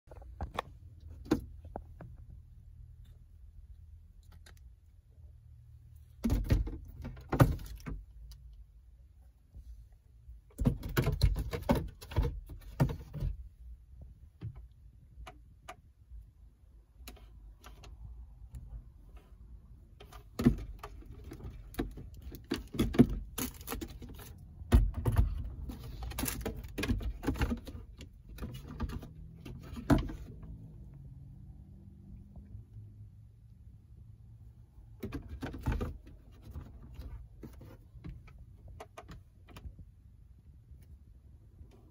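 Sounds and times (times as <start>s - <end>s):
objects being handled: 18.9s - 30.5s.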